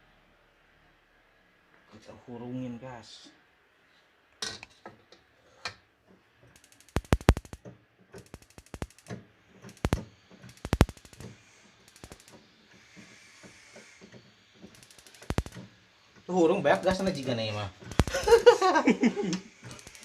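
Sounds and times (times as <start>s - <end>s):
gas stove igniter clicking: 8.2s - 12.5s, 14.7s - 15.7s
soft hiss of gas: 8.3s - 20.0s.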